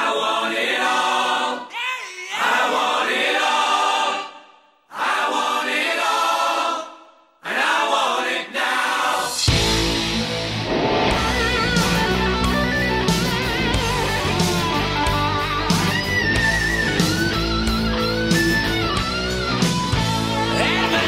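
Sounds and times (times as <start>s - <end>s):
choral singing: 0.0s - 9.9s, 19.9s - 21.0s
distorted electric guitar: 9.5s - 21.0s.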